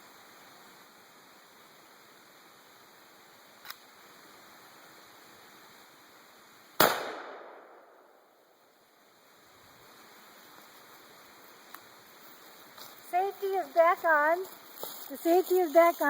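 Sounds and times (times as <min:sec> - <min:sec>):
light click: 0:03.6 - 0:03.8
shotgun shot: 0:06.8 - 0:08.0.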